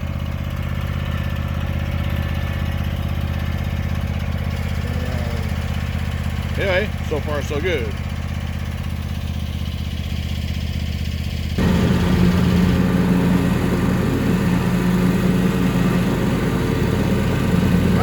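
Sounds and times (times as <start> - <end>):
riding mower engine running: 0.0 - 18.0
mower blades turning: 11.6 - 18.0.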